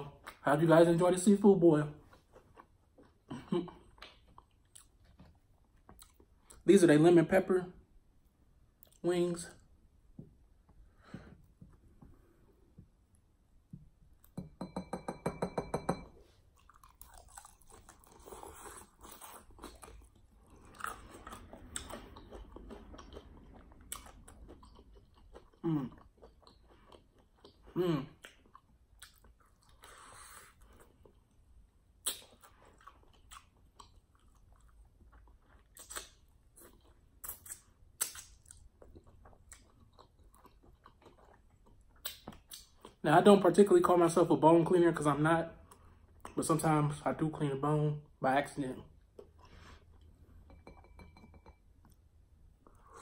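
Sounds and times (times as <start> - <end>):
chewing crispy chicken wings: 16.6 - 30.3.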